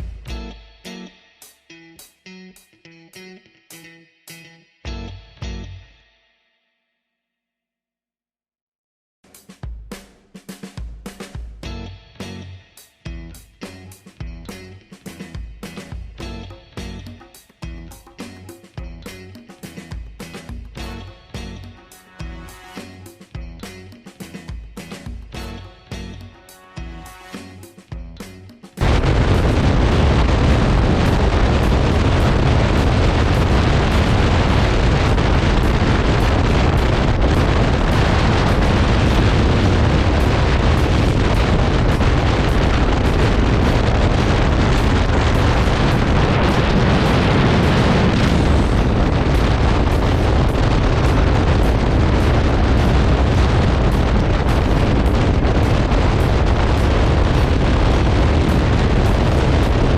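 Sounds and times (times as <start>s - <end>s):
wind buffeting microphone: 28.8s - 59.9s.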